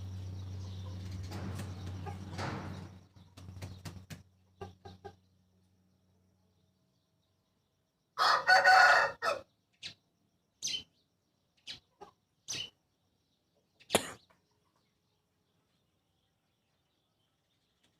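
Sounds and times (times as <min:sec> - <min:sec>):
rooster crowing: 0:08.2 - 0:09.5.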